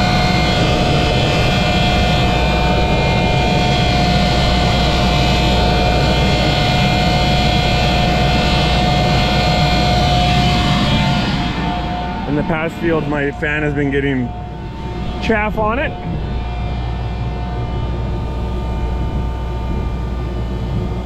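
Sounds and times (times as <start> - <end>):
fan running with high whine: 0.0 - 21.0
low rumble of machinery: 0.0 - 21.0.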